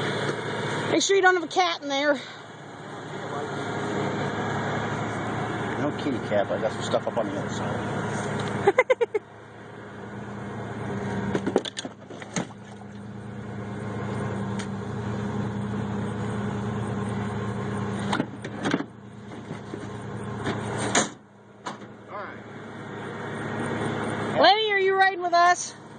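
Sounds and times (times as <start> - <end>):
vehicle engine idling: 0.0 - 25.9
sharp clunks and knocks: 11.3 - 13.0, 18.0 - 22.0.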